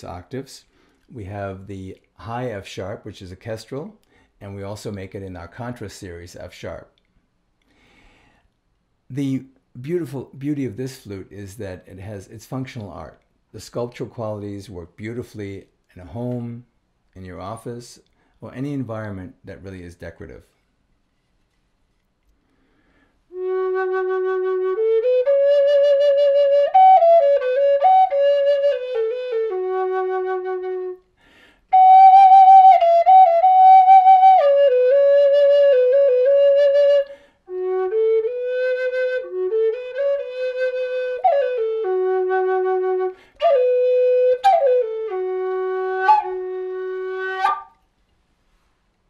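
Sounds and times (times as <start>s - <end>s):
slow flute melody: 23.3s - 31.1s, 31.7s - 47.8s.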